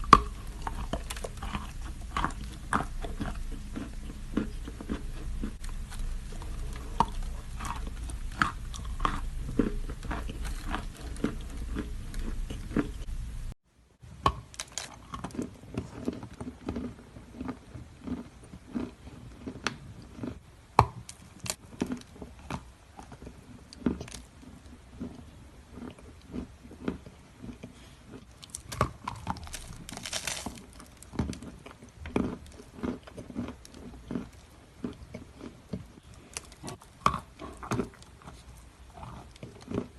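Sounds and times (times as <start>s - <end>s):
chewing crunchy chalk: 0.0s - 13.1s, 14.6s - 20.4s, 21.1s - 39.9s
low hum: 0.0s - 13.6s.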